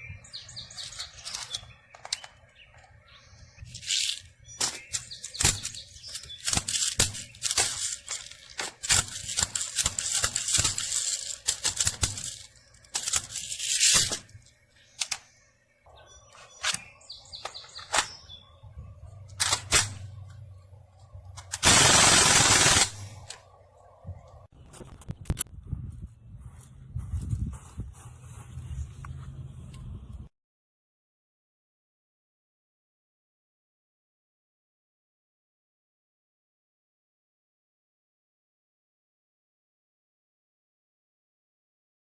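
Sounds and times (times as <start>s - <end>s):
bb gun firing sharp pops: 4.6s - 8.0s.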